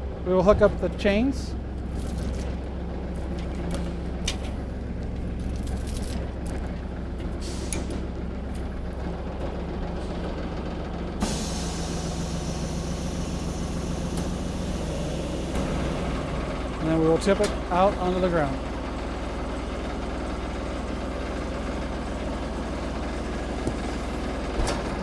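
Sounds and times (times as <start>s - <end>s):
diesel engine running: 0.0s - 25.0s
metal chains clinking: 1.8s - 7.6s, 8.4s - 9.6s.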